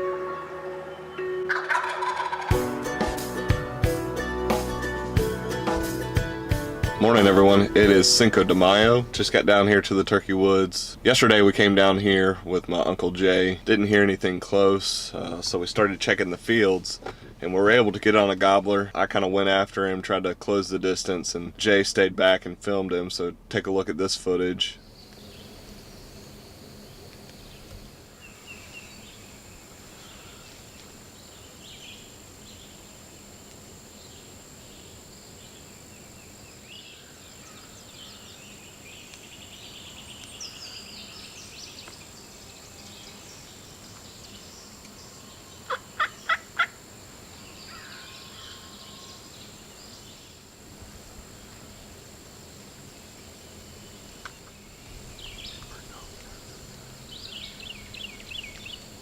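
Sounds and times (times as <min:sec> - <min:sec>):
turkey gobbling: 0:01.1 - 0:02.7, 0:45.7 - 0:46.8
faint songbird chirps: 0:24.7 - 0:33.1, 0:33.8 - 0:50.5, 0:52.9 - 0:59.0.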